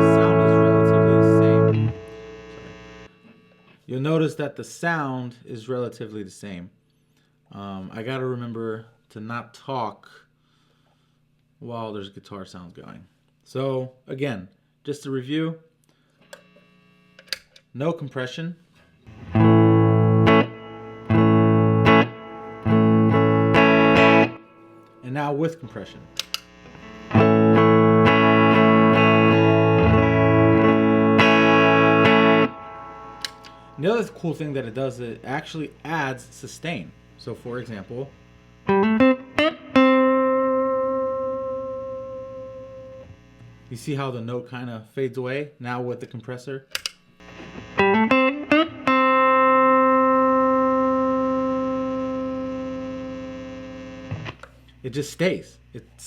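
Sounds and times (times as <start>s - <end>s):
electric guitar strumming: 0.0s - 3.2s, 19.1s - 43.6s, 47.2s - 54.7s.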